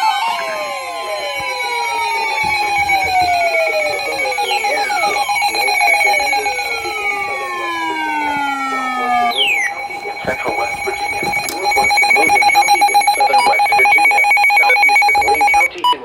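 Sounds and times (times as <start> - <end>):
tones sliding downward in pitch: 0.0 - 15.8
chirping data bursts: 0.0 - 16.0
two-tone attention signal: 0.0 - 16.0.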